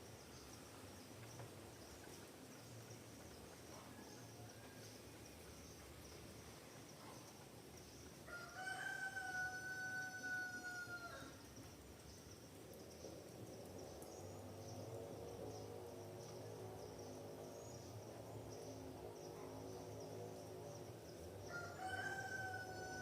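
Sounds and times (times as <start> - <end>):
insects humming: 0.0 - 23.0
rooster crowing: 8.3 - 11.4, 21.5 - 23.0.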